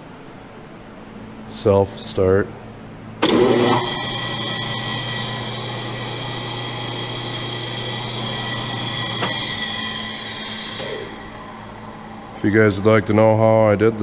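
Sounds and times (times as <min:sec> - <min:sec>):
electric motor humming and whining: 0:03.2 - 0:13.1.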